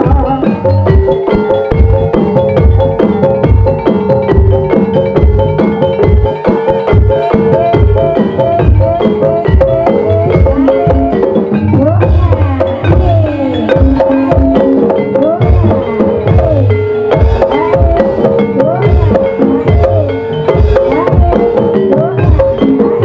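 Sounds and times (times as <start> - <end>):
gliding melodic line: 0.0 - 23.0
struck tuned percussion melody: 0.0 - 23.0.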